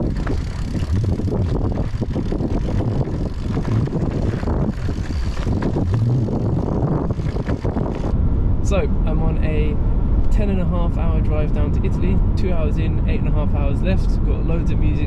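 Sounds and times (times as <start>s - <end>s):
car engine and tyre rumble: 0.0s - 15.0s.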